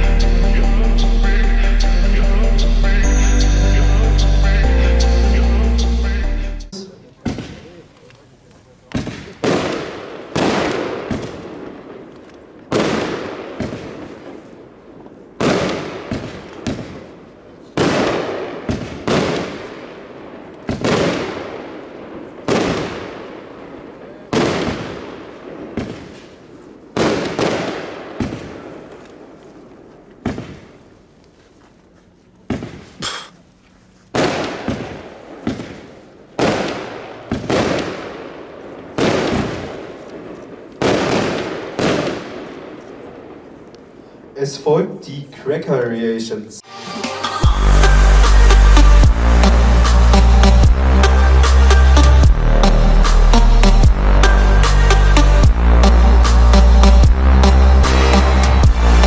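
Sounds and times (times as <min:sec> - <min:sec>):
firework bangs: 0:07.2 - 0:07.9, 0:08.9 - 0:29.0, 0:30.2 - 0:30.9, 0:34.2 - 0:43.5.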